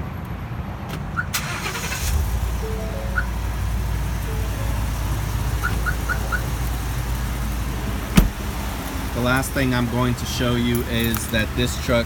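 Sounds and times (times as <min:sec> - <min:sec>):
car engine starting and idling: 0:01.3 - 0:12.0.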